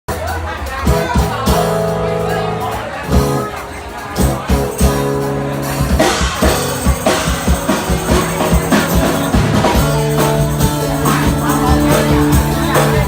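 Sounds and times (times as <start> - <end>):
drum kit steady beat: 0.1 - 13.0
rock band playing: 0.1 - 13.0.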